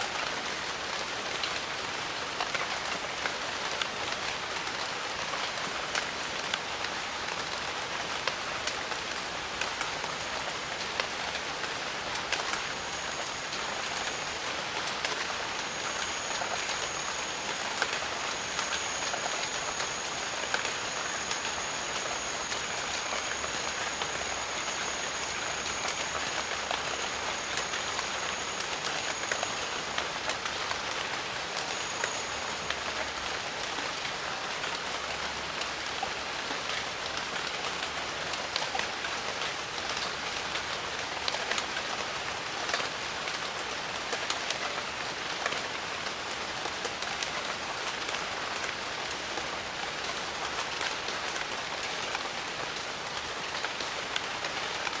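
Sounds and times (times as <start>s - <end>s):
rain on foliage: 0.0s - 55.0s
thin high steady tone: 10.4s - 33.3s.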